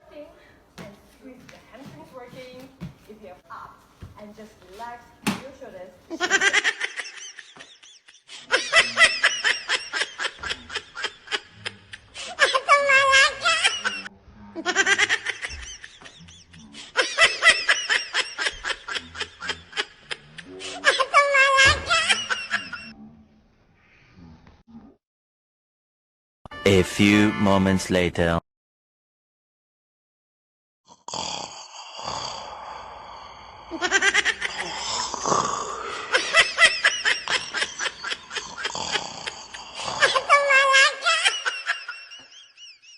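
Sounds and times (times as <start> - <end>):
high-pitched laughter: 6.1 - 14.0, 14.8 - 22.9, 40.0 - 42.9.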